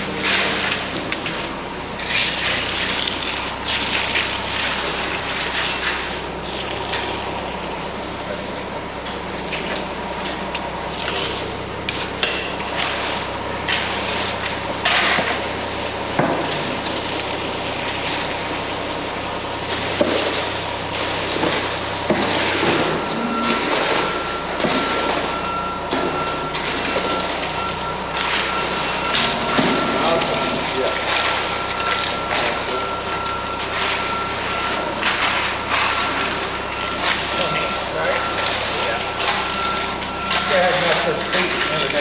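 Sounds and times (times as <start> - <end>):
engine humming: 0.0 - 42.0
scrapes and knocks of concrete work: 0.0 - 42.0
steady high whine: 14.8 - 42.0.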